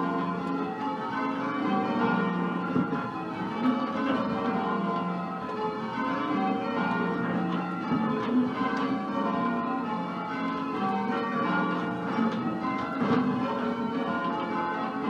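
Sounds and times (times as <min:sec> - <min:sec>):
church bells ringing: 0:00.0 - 0:15.0.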